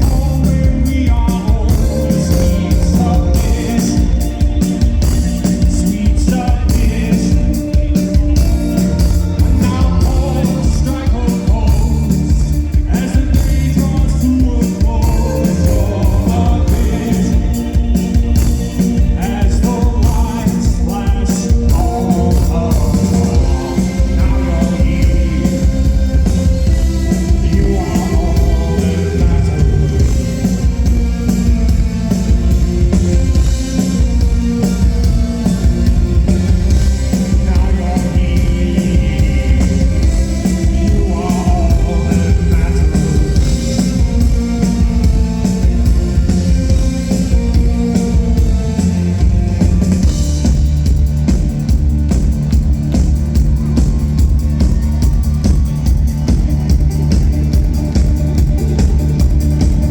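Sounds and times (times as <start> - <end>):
electronic beat music: 0.0 - 59.9
rock music with singing: 0.0 - 59.9.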